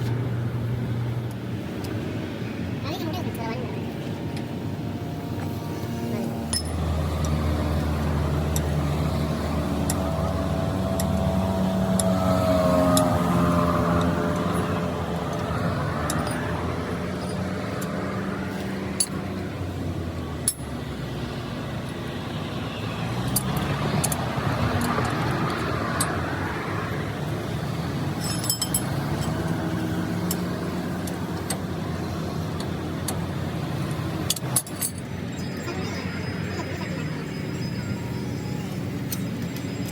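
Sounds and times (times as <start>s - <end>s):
vehicle engines and traffic: 0.0s - 39.9s
sharp metallic clinks: 6.5s - 7.8s, 13.8s - 18.0s, 28.1s - 29.6s, 33.0s - 39.9s.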